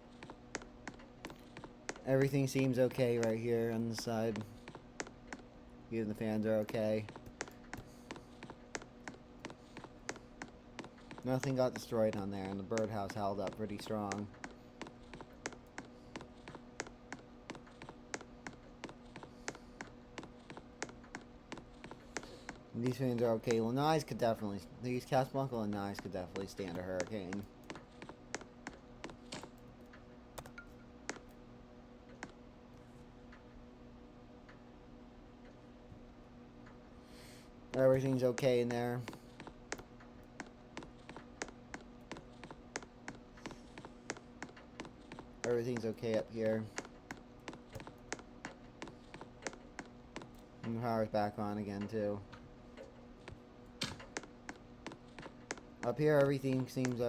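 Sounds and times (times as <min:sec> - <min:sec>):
ceiling fan motor hum: 0:00.0 - 0:57.0.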